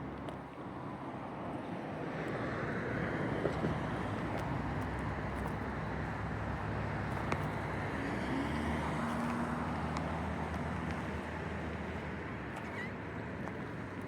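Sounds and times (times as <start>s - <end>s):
low rumble of vehicles: 0.0s - 14.0s.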